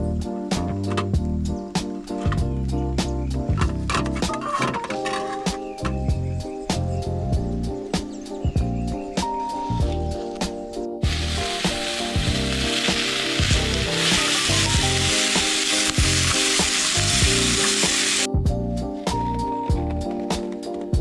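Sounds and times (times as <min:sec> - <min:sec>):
food sizzling in a frying pan: 0:11.0 - 0:18.3.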